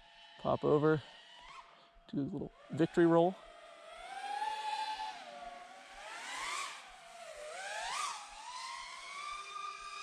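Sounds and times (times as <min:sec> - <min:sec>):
drone motors whining: 0:02.6 - 0:10.0.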